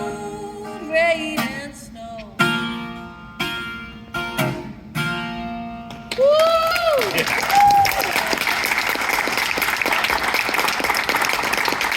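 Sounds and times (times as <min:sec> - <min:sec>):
acoustic guitar strums: 0:01.4 - 0:06.1.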